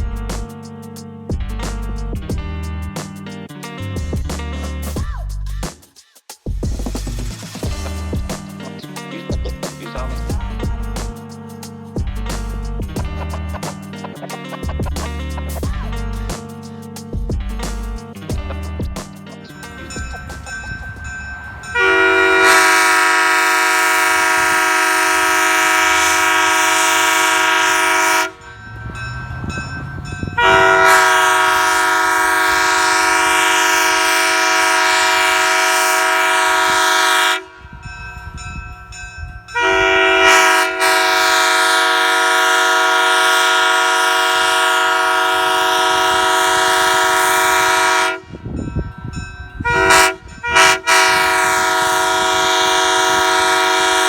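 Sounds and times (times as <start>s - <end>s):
three-chime air horn blasts: 19.6s - 54.0s.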